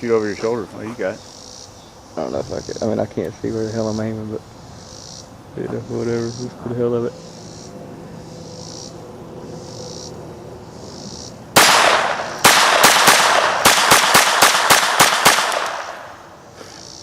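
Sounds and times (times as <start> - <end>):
pistol shots: 11.6 - 16.3.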